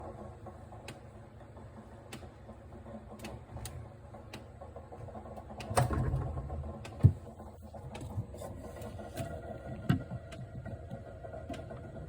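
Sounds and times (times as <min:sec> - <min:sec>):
refrigerator low hum: 0:00.0 - 0:12.0
refrigerator ticking: 0:02.0 - 0:08.2.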